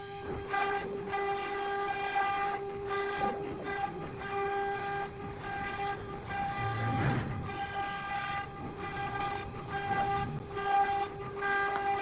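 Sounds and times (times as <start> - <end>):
router spindle whine: 0.0 - 12.0
rush of cutting noise: 3.2 - 12.0.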